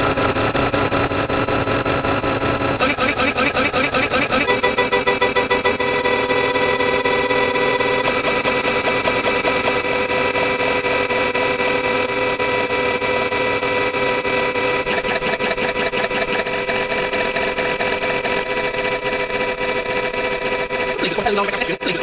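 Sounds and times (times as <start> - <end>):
buzzing electronic tone with clicks: 2.8 - 10.4, 14.1 - 18.9.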